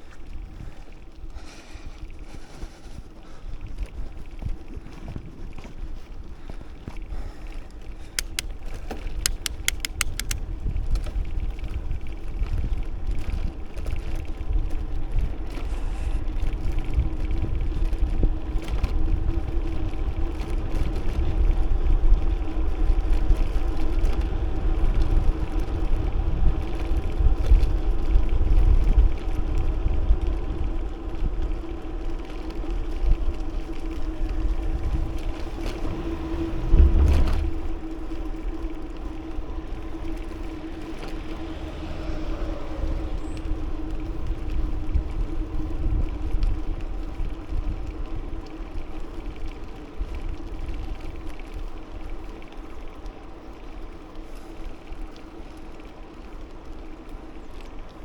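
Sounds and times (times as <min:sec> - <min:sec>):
wind buffeting microphone: 0:00.0 - 0:55.5
bicycle tyre road noise: 0:00.0 - 0:58.0
sharp clicks: 0:08.2 - 0:10.4.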